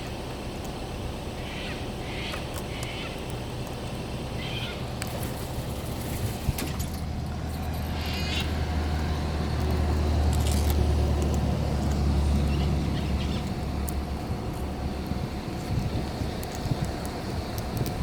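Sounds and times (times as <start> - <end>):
motor vehicle rumble: 0.0 - 18.0
warbling bird call: 4.4 - 4.8.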